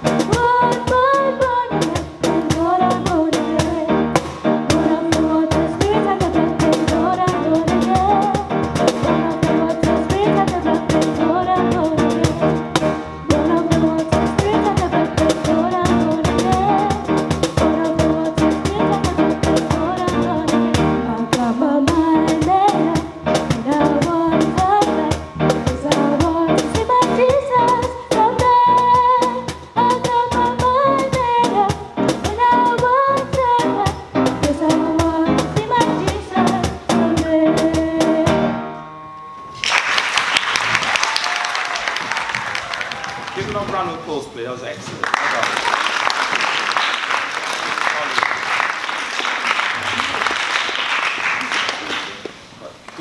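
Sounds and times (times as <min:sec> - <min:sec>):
drum kit beat: 0:00.0 - 0:38.5
person singing: 0:00.0 - 0:38.5.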